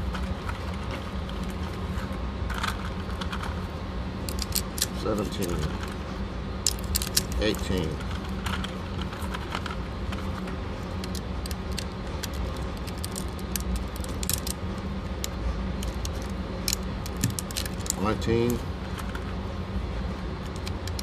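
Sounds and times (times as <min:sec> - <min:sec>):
steady low hum: 0:00.0 - 0:21.0
metallic clicks and scrapes: 0:06.6 - 0:14.6.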